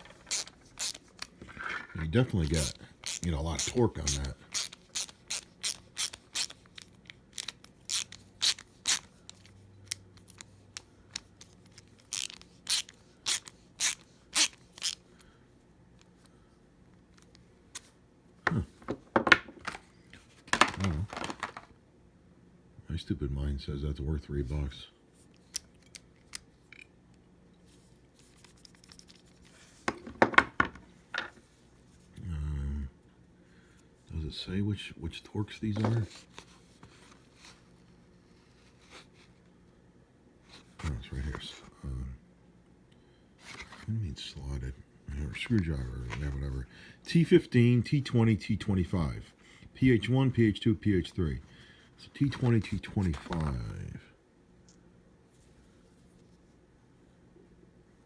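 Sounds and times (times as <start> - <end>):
ratcheting screwdriver clicking: 0.0 - 1.3, 2.4 - 15.0.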